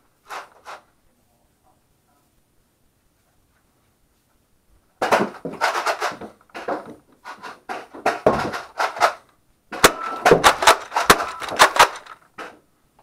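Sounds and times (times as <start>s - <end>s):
toy blaster knocks and clacks: 5.0s - 9.2s, 9.8s - 12.6s.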